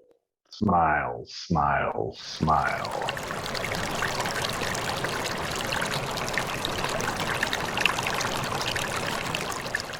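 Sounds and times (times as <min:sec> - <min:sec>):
water trickling and babbling: 0:02.2 - 0:09.9.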